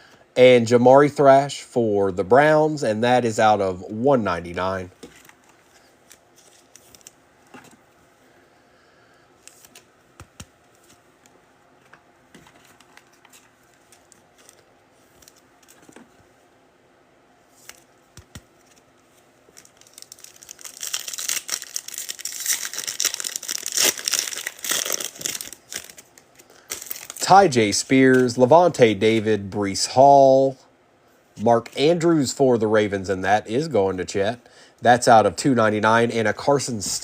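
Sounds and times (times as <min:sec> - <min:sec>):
foil wrapper crinkling and tearing: 0:19.5 - 0:27.4.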